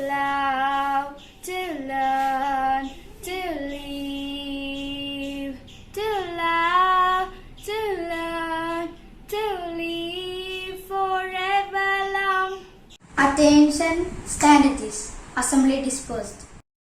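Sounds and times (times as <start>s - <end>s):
woman singing: 0.0s - 12.4s
children singing: 0.0s - 12.6s.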